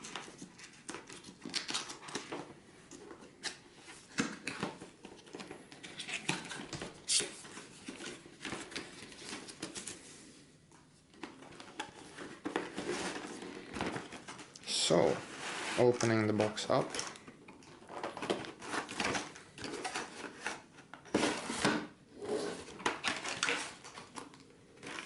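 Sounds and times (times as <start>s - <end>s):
cardboard box being opened: 12.0s - 14.4s.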